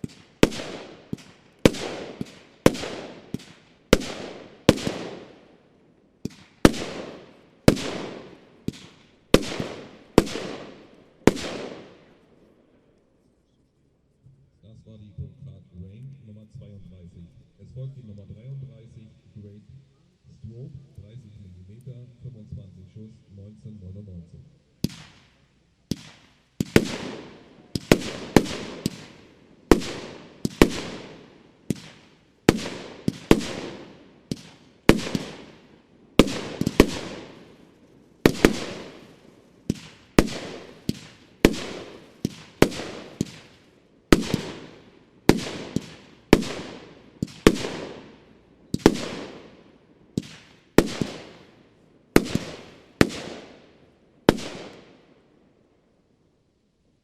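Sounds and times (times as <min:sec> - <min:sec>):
firework shots with hiss: 0:00.0 - 0:05.6, 0:06.2 - 0:12.2, 0:24.8 - 0:55.1.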